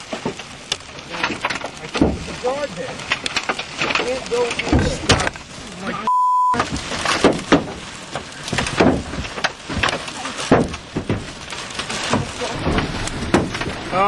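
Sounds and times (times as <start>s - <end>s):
hailstones banging on truck: 0.0s - 14.0s
short steady beep: 6.1s - 6.6s.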